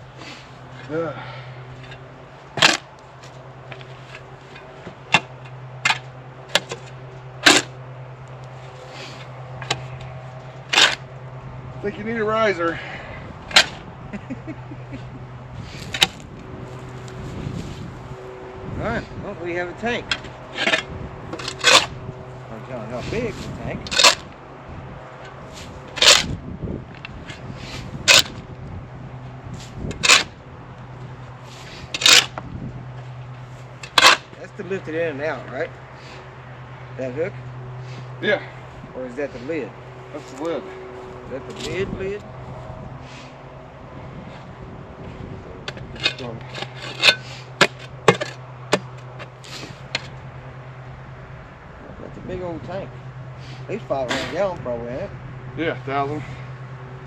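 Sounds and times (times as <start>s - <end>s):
diesel engine humming: 0.0s - 57.0s
sharp knocks and scrapes: 1.7s - 7.8s, 8.5s - 11.2s, 13.5s - 13.8s, 15.0s - 18.0s, 19.8s - 22.0s, 22.8s - 24.4s, 25.1s - 26.4s, 27.0s - 28.4s, 29.5s - 30.4s, 31.4s - 36.2s, 41.4s - 42.2s, 44.2s - 50.2s, 53.4s - 55.0s
shovel scraping through dirt: 8.6s - 10.0s, 10.6s - 11.1s, 15.6s - 16.2s, 20.5s - 22.0s, 22.8s - 24.3s, 25.5s - 26.4s, 27.3s - 28.4s, 29.6s - 30.4s, 31.4s - 32.4s, 33.8s - 34.4s, 45.7s - 50.1s, 53.4s - 54.4s.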